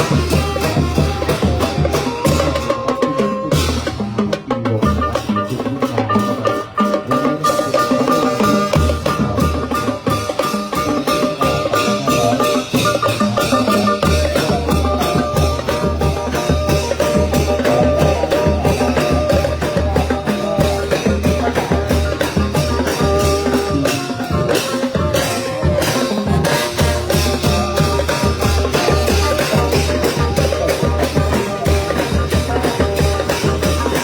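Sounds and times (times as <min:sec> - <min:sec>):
drums and cymbals beat: 0:00.0 - 0:34.0.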